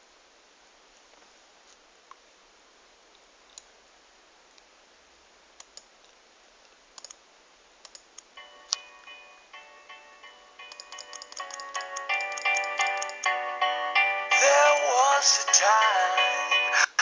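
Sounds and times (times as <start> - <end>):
taps on a tablet: 10.7 - 13.4.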